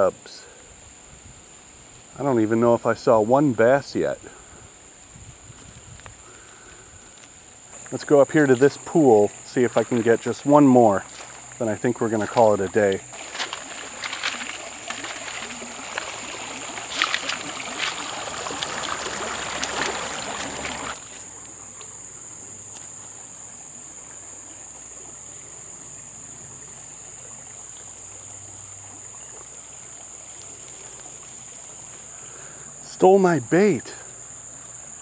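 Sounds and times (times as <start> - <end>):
creek trickling: 0.0 - 35.0
insects high-pitched note: 0.0 - 35.0
footsteps wading through water: 5.3 - 25.2, 25.8 - 32.8.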